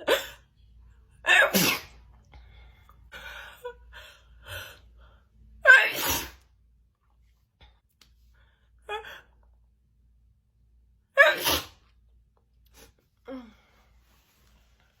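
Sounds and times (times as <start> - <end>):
woman sneezing: 1.3 - 2.0, 5.6 - 6.4, 11.2 - 11.8.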